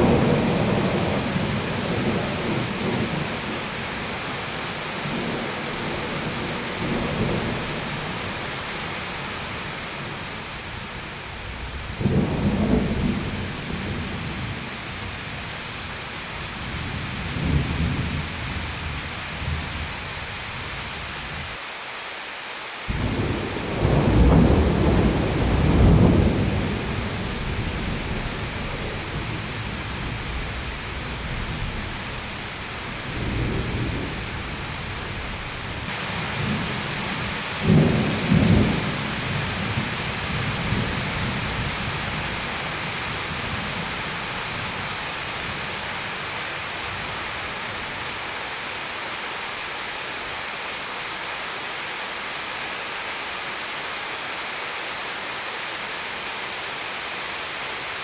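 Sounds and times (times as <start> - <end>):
rolling thunder: 0.0 - 3.5, 11.3 - 15.4, 16.7 - 19.8, 22.9 - 42.4
heavy rain: 0.0 - 58.0.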